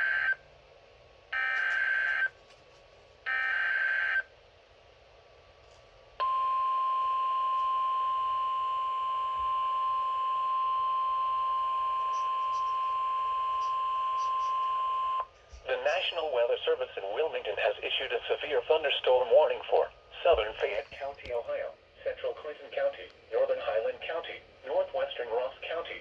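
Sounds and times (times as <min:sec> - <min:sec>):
steady single-tone attention signal: 0:06.2 - 0:15.2.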